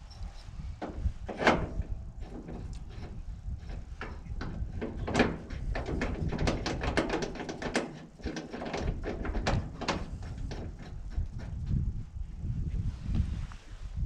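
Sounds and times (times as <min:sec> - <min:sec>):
metallic clicks and knocks: 0:00.8 - 0:11.8.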